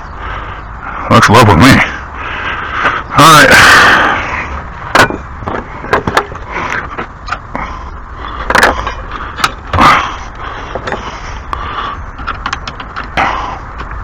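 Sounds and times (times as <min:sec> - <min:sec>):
knocks and clicks of handling: 0:04.9 - 0:07.5, 0:10.7 - 0:11.1, 0:12.2 - 0:14.0.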